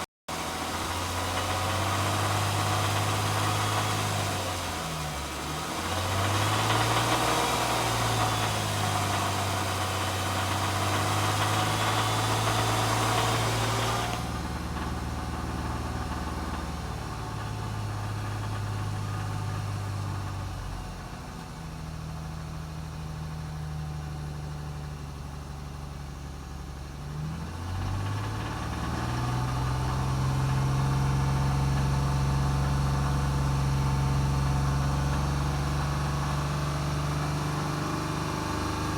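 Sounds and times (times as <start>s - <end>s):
car engine idling: 0.3s - 38.9s
engine knock rattle: 0.6s - 4.8s, 6.0s - 20.2s.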